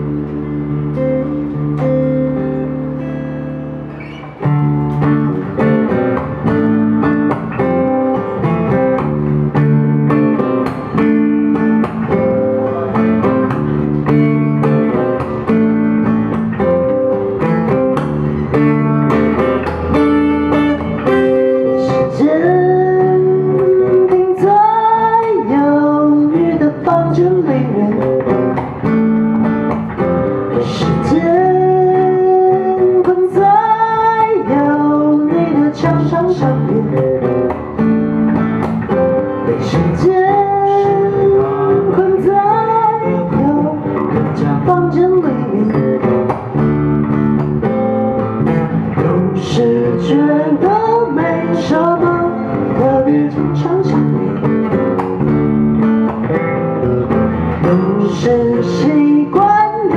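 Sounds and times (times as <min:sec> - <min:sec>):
acoustic guitar: 0:00.0 - 0:59.9
person singing: 0:10.4 - 0:15.0, 0:20.0 - 0:28.6, 0:30.4 - 0:37.6, 0:39.2 - 0:46.4, 0:48.9 - 0:55.0, 0:57.4 - 0:59.9.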